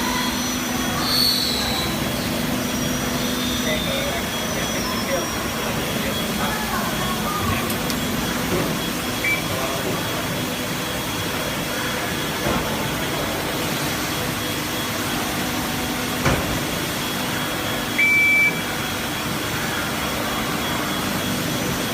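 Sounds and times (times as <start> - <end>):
water ionizer beeping: 0.0 - 13.1, 14.1 - 21.9.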